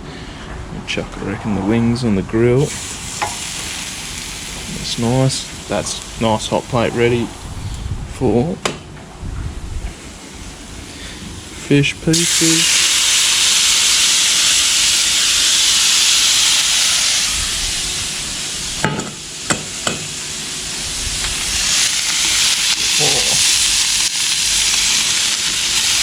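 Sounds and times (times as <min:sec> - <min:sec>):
fish sizzling on a hot plate: 0:02.7 - 0:05.8, 0:10.3 - 0:26.0.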